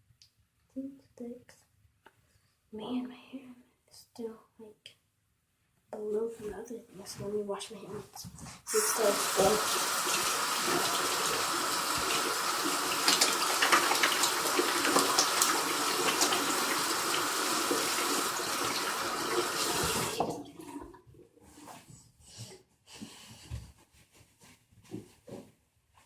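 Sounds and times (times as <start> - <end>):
hands washing with splashing: 8.7 - 21.0
tap running into sink: 9.1 - 20.6.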